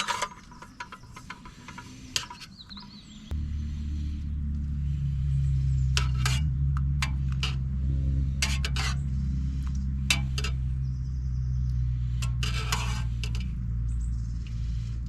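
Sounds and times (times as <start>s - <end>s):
steady low hum: 3.0s - 15.0s.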